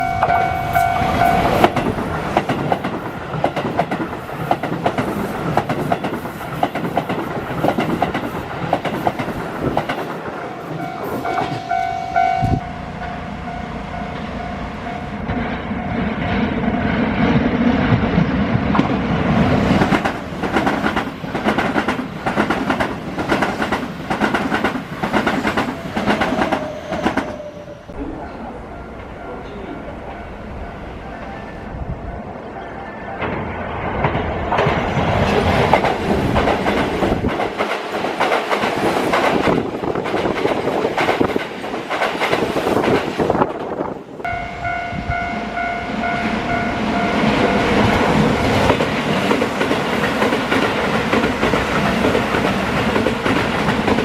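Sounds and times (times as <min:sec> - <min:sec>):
held warning tone: 0:00.0 - 0:02.1, 0:10.7 - 0:16.1
low train hum: 0:00.0 - 0:54.0
train wheels clattering over rails: 0:01.0 - 0:11.8, 0:15.2 - 0:28.3, 0:33.2 - 0:44.0, 0:46.0 - 0:54.0.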